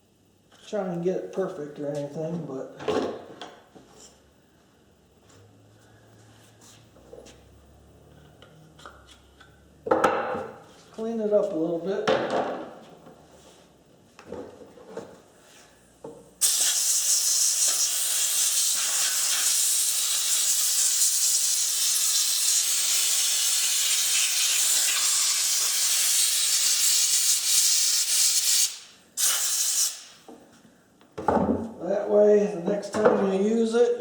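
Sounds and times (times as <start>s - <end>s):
compressed air blow gun hissing: 16.4s - 30.2s.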